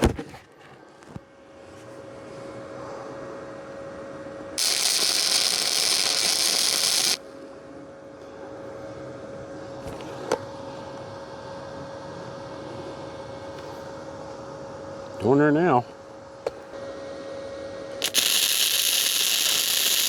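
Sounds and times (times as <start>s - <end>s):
faint hum: 0.0s - 20.0s
welder arc crackling: 4.6s - 7.2s, 18.0s - 20.0s.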